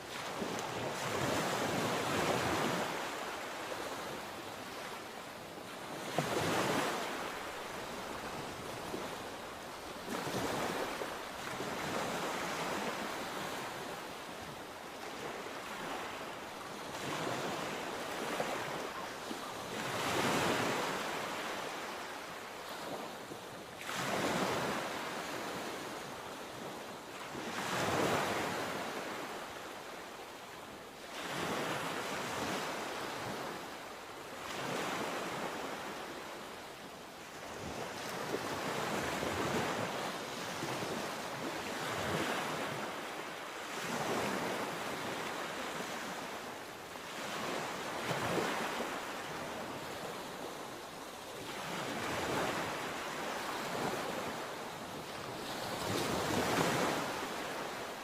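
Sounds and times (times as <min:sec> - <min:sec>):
sea waves breaking on shore: 0:00.0 - 0:58.0.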